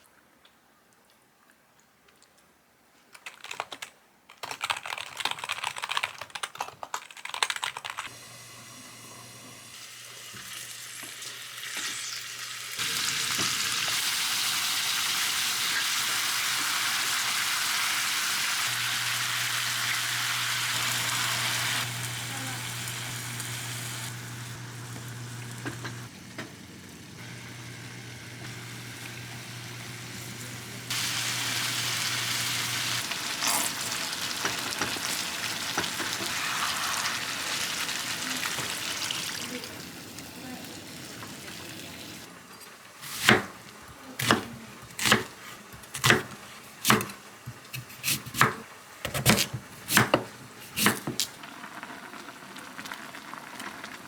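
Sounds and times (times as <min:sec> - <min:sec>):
food sizzling in hot pan: 0:08.2 - 0:42.3.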